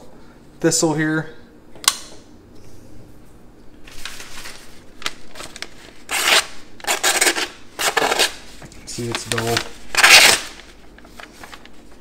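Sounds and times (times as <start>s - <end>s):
paper tearing and crinkling: 3.9s - 11.8s
knife rasping through paper: 6.1s - 8.4s.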